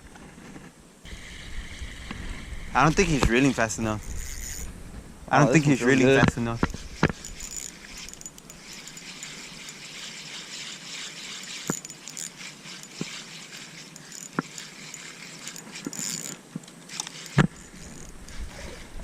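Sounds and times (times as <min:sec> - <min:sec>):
river water flowing: 0:06.8 - 0:19.0.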